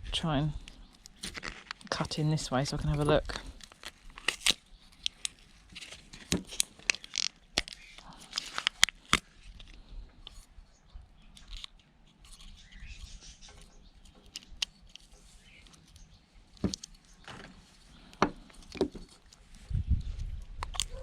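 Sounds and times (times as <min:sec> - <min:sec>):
plastic clicks and snaps: 0:13.5 - 0:17.0, 0:20.3 - 0:21.0.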